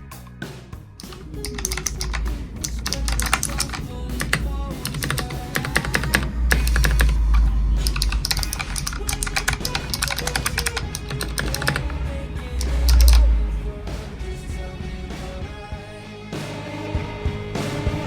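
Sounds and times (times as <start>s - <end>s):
music with heavy bass: 0.0s - 18.0s
rapid keyboard typing: 1.0s - 12.0s.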